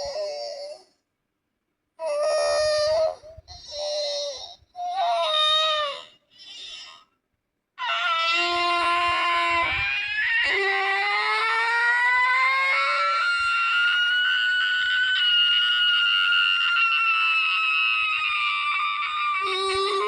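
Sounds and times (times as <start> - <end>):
cartoon character crying wail: 7.8 - 20.0.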